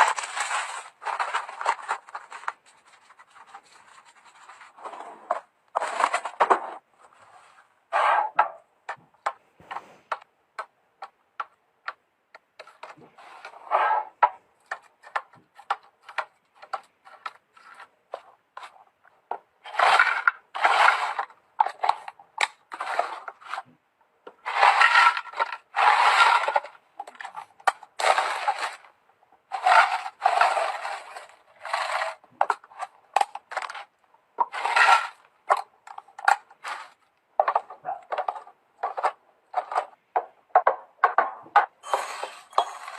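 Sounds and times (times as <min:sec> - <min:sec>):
objects clicking and knocking: 0:00.0 - 0:07.2, 0:08.2 - 0:42.9
scraping and rustling: 0:00.0 - 0:10.3, 0:41.8 - 0:42.9.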